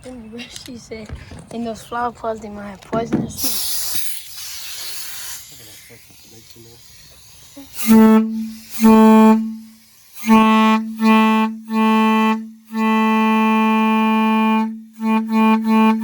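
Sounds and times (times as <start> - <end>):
train horn blasts: 7.8 - 16.0.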